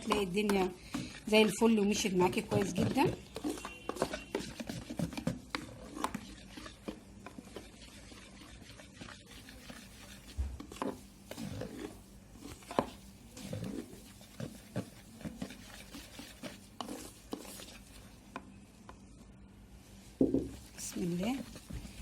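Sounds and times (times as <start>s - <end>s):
batter scraping in bowl: 0.0s - 18.1s.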